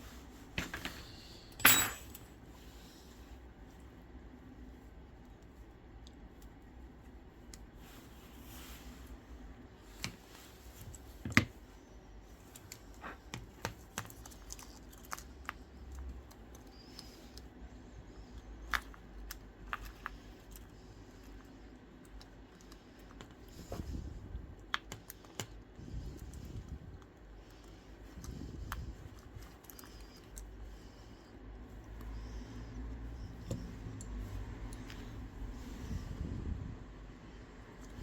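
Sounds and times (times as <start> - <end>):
metal tools tapping phone parts: 0.6 - 2.2.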